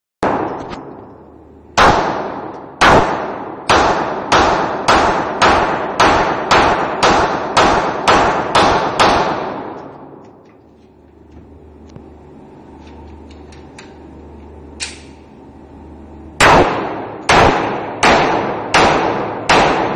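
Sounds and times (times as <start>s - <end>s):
handgun shots echoing: 1.8s - 10.4s, 14.8s - 15.2s, 16.4s - 19.9s.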